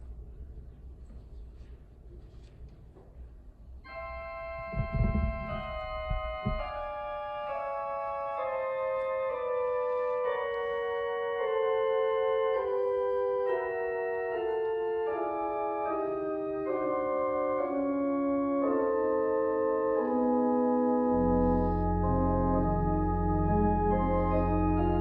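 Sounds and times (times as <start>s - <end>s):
church organ chords: 3.8s - 25.0s
deep organ bass pedal note: 4.5s - 6.8s, 20.7s - 25.0s.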